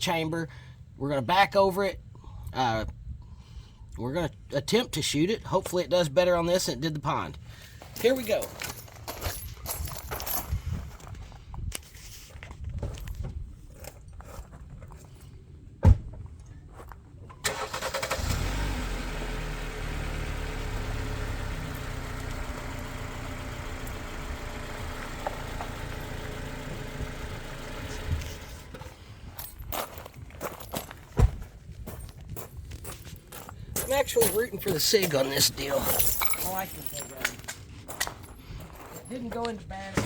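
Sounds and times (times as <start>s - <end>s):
vehicle engine running: 18.1s - 29.3s.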